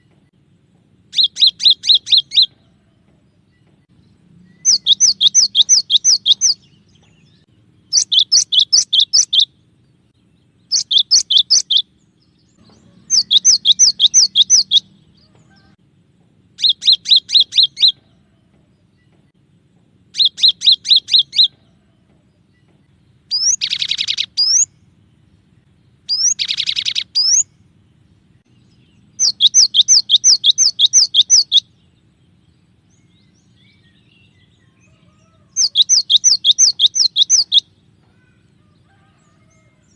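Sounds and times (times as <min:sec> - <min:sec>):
buzzy bird call: 0:01.1 - 0:03.4, 0:04.6 - 0:06.8, 0:07.9 - 0:09.6, 0:10.7 - 0:11.9, 0:12.6 - 0:15.8, 0:16.6 - 0:18.4, 0:20.1 - 0:22.0, 0:23.3 - 0:24.7, 0:26.1 - 0:27.5, 0:29.2 - 0:31.7, 0:34.6 - 0:39.9.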